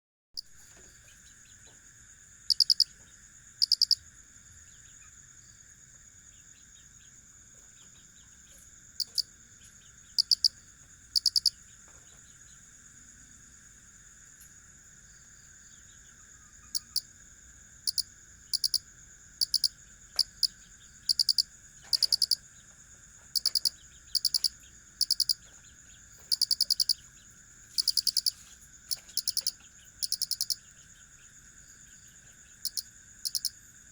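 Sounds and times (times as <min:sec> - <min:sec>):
cricket chirping: 0:00.4 - 0:33.9
high-pitched insect trill: 0:02.5 - 0:02.9, 0:03.6 - 0:04.0, 0:09.0 - 0:10.6, 0:11.2 - 0:11.6, 0:15.4 - 0:17.2, 0:17.9 - 0:22.5, 0:23.3 - 0:33.8.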